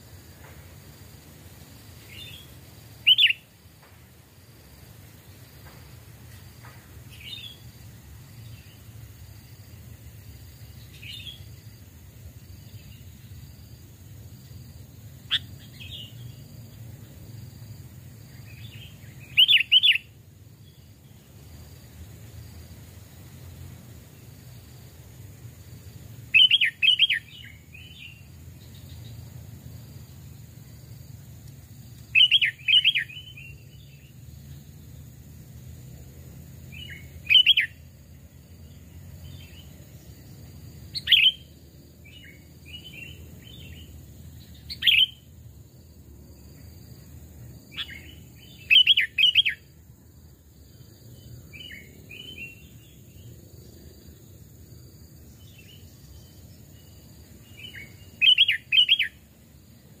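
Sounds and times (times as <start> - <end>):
bulbul chirping: 2.2 - 3.4.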